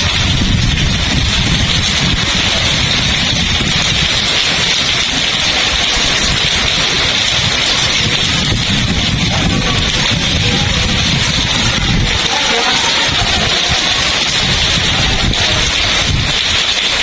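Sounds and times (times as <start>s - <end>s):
heavy rain pouring: 0.0s - 17.0s
wind buffeting microphone: 0.0s - 17.0s.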